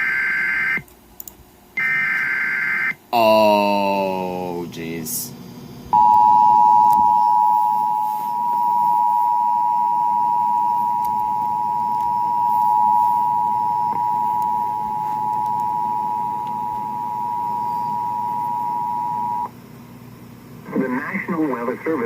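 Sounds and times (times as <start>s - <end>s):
two-tone alarm: 0.0s - 0.8s, 5.9s - 19.5s.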